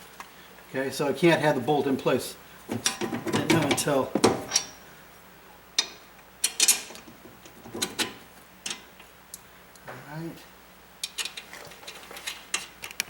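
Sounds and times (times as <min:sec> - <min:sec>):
tools and metal parts clanking: 0:02.7 - 0:04.8, 0:06.4 - 0:08.9, 0:11.0 - 0:13.0.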